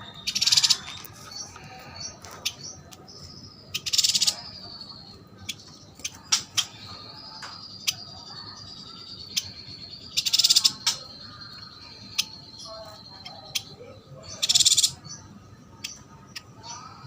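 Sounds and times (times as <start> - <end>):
buzzy rattling bird call: 3.8 - 4.4, 10.2 - 11.0, 14.4 - 15.0.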